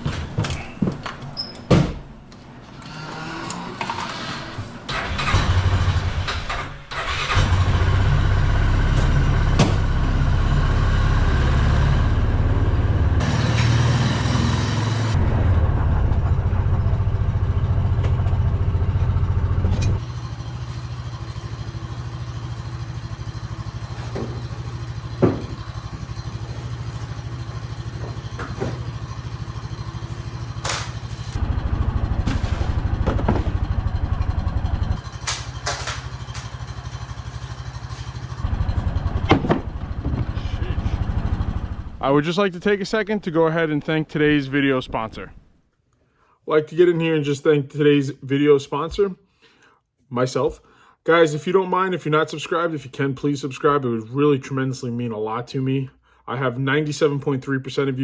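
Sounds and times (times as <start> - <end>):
small engine starting and running: 2.8 - 42.0.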